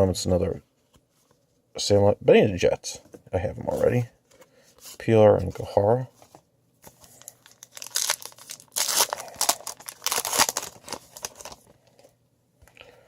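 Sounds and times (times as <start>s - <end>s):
wrapper tearing and crinkling: 7.2s - 11.6s.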